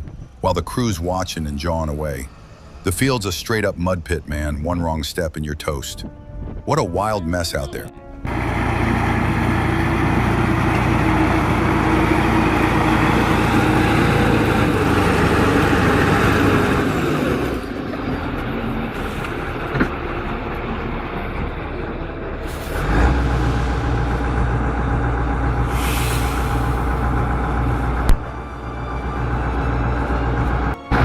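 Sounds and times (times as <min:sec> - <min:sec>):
heavy vehicle engine running: 0:08.2 - 0:31.0.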